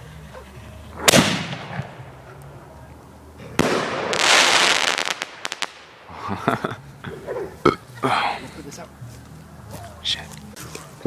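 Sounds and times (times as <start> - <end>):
firework rushing hiss: 0.9 - 2.2, 3.4 - 6.0
firework bang: 1.0 - 2.2, 3.5 - 6.0
firework sharp pops: 1.0 - 2.4, 3.4 - 6.0.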